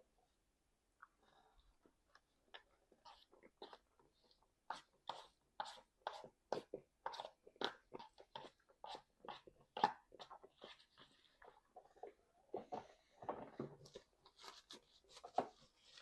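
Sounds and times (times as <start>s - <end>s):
person chewing food: 2.1s - 12.1s.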